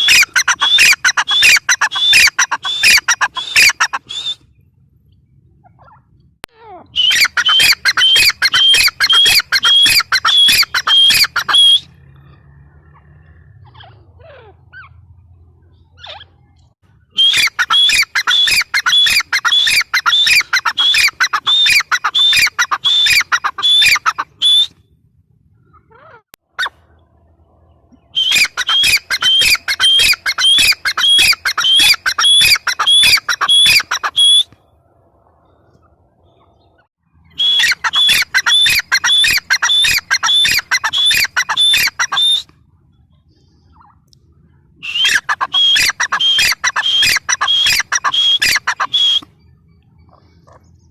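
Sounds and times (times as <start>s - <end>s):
francolin calling shrill notes: 17.2s - 24.7s, 28.2s - 34.5s, 44.8s - 49.2s.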